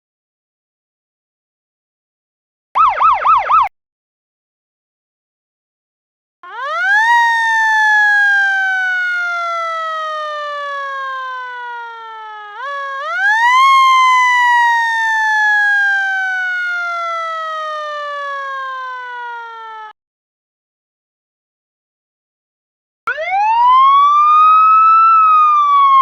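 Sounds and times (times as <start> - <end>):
siren wailing: 2.8 - 3.7, 6.4 - 20.0, 23.1 - 26.0.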